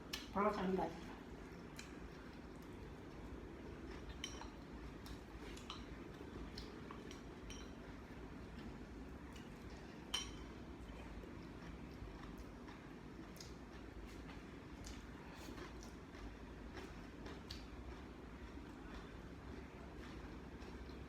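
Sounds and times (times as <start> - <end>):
low steady hum: 0.0 - 21.0
utensils clinking against dishes: 7.0 - 7.8, 10.1 - 10.5.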